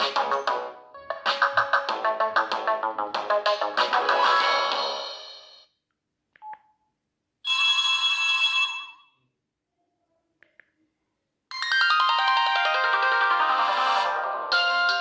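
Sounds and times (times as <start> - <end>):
phone ringtone: 7.4 - 9.2.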